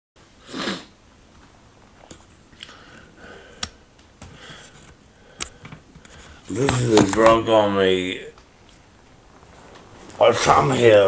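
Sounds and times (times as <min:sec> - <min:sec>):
faint rustling: 0:04.2 - 0:11.0.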